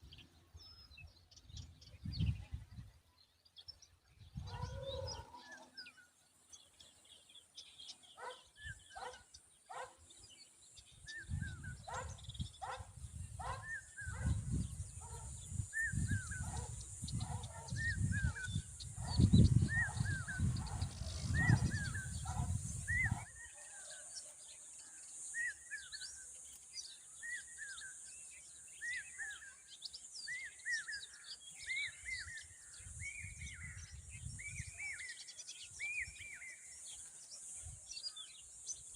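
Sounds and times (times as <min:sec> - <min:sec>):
bird giving sharp chirping calls: 0:11.1 - 0:23.4.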